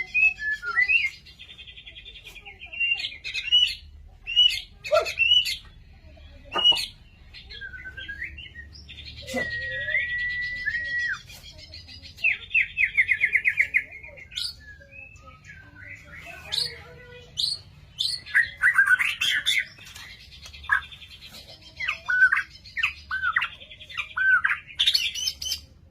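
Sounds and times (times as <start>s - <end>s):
songbird whistling song: 0.0s - 5.7s, 6.6s - 25.7s.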